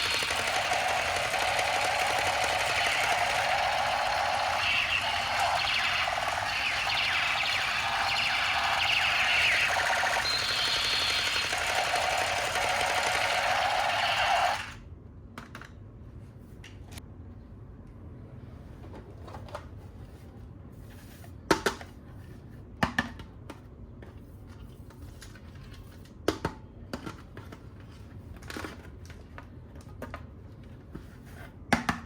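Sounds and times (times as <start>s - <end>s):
toy buzzing electronic effect: 0.0s - 14.8s.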